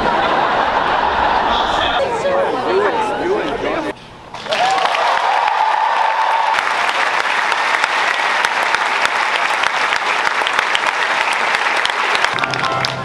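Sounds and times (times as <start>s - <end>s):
audience applauding: 0.0s - 13.0s
music: 12.3s - 13.0s.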